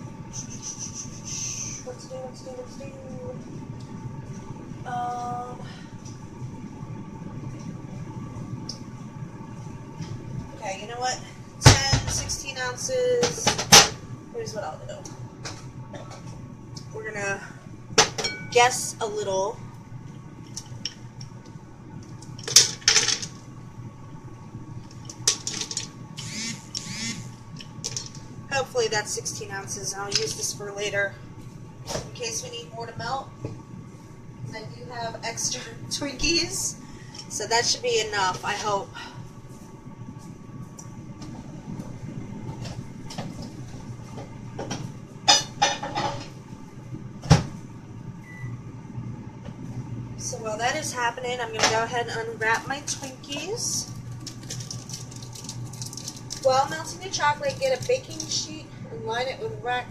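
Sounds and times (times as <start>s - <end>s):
chocolate pieces rattling into bowl: 54.2s - 56.5s.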